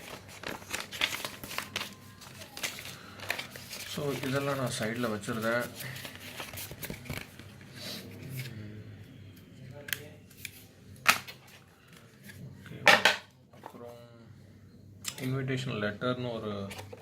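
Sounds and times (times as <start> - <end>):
packaging clicks and rustles: 0.0 - 7.6.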